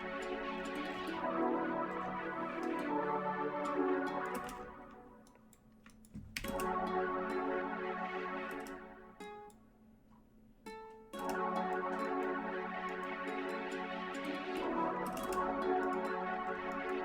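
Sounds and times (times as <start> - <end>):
keyboard and mouse clicks: 4.2 - 6.9, 8.5 - 8.8, 15.0 - 15.6
ambient trap beat: 11.2 - 17.0.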